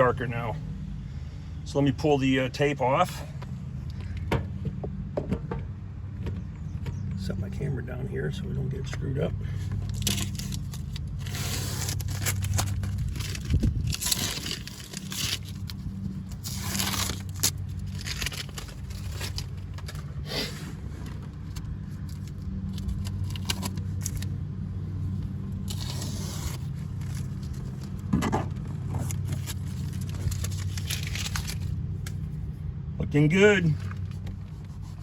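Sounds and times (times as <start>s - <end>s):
steady low hum: 0.0s - 35.0s
masking tape being peeled: 9.9s - 20.6s, 21.5s - 24.3s, 25.5s - 28.1s, 28.9s - 32.2s.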